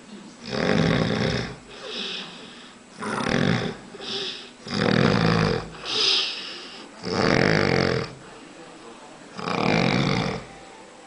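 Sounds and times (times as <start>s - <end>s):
man snoring: 0.4s - 2.4s, 3.0s - 8.2s, 9.4s - 10.5s.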